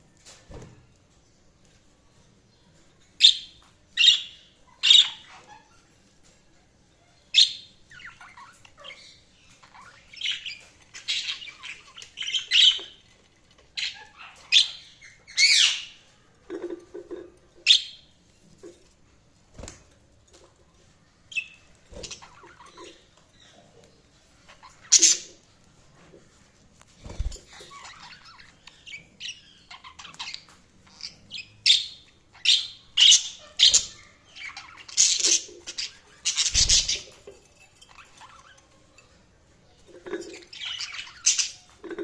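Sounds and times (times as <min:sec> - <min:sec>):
budgerigars chirping and squawking: 0:03.2 - 0:06.0, 0:07.3 - 0:18.1, 0:21.3 - 0:23.6, 0:24.4 - 0:25.5, 0:27.2 - 0:42.0.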